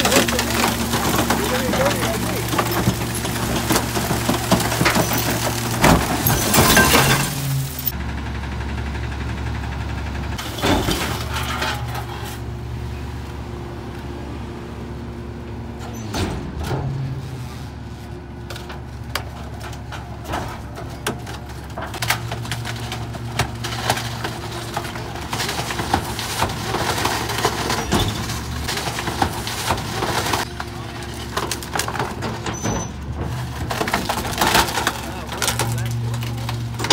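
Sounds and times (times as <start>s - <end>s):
glass breaking: 0.0s - 7.9s
truck engine and hydraulics: 0.0s - 36.9s.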